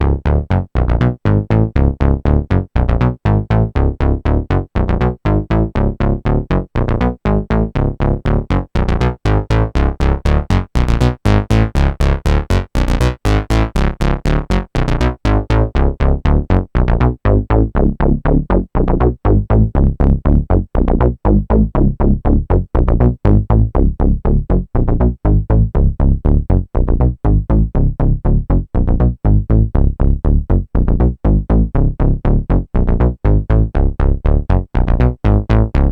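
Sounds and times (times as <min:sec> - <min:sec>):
synth bass: 0:00.0 - 0:35.9
electronic bass drum beat: 0:07.8 - 0:35.9.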